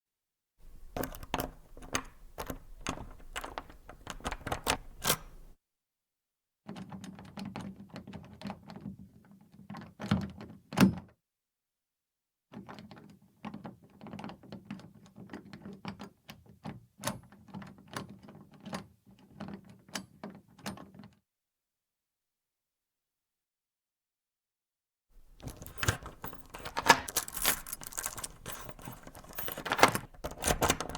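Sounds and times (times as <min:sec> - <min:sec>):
metal latch clicking and rattling: 0:00.6 - 0:05.6, 0:25.2 - 0:30.9.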